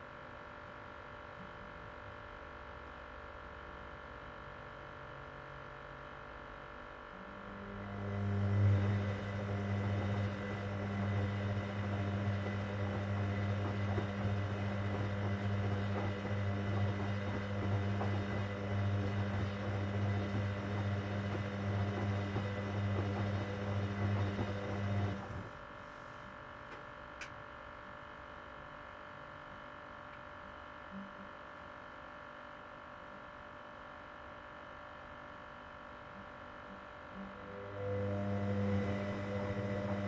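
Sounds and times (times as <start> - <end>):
washing machine humming: 7.4 - 26.7, 37.3 - 40.0.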